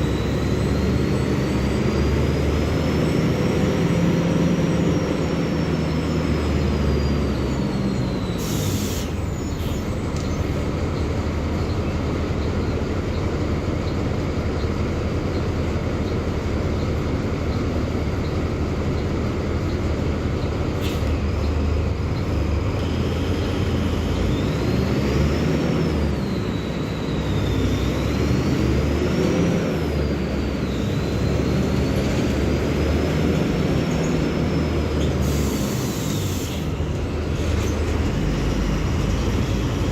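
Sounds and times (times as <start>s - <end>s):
bus diesel engine droning: 0.0s - 39.9s
air hissing: 8.4s - 9.8s, 35.2s - 36.8s.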